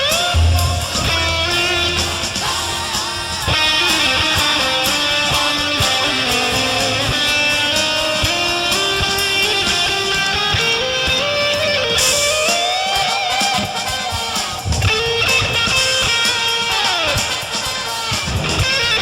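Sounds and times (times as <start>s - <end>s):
lead guitar sliding notes: 0.0s - 2.8s
blues band jamming: 0.0s - 19.0s.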